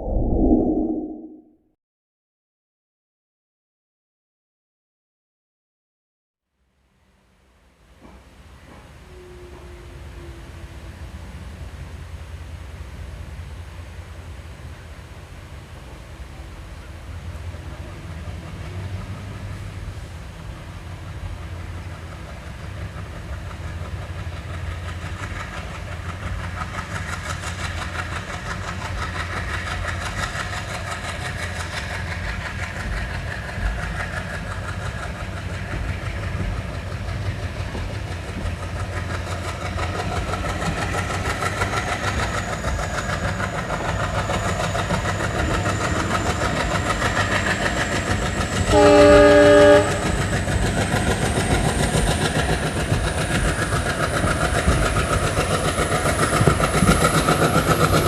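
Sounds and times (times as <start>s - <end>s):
faint rising whine: 0.0s - 1.5s
train rumble with wheel clatter: 7.6s - 58.0s.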